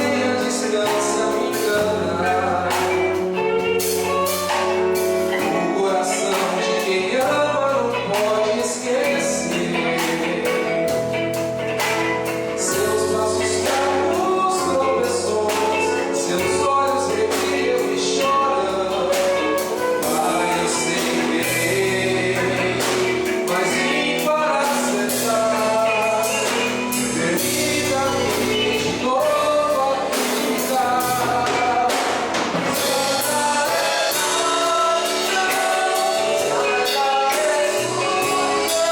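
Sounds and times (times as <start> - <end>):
bass line: 0.0 - 38.9
drum beats: 0.0 - 38.9
people singing: 0.0 - 38.9.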